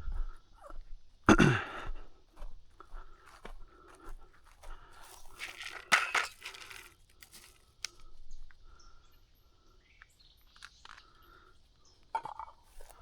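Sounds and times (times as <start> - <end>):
rustling and crunching: 3.2 - 8.1.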